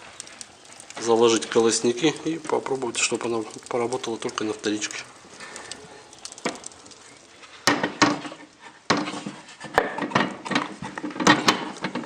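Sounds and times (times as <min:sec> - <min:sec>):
metal stove door knocks and clanks: 0:09.8 - 0:12.0.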